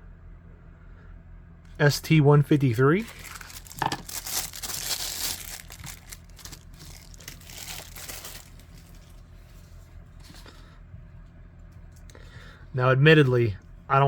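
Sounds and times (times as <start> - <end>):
packaging crinkling and rustling: 3.0 - 10.4.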